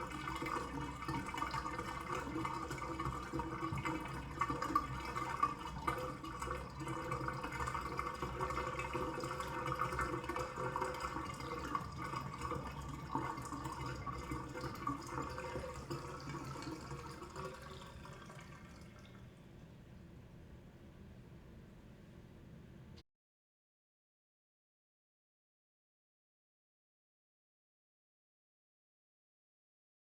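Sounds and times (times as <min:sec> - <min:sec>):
water running down drain: 0:00.0 - 0:19.7.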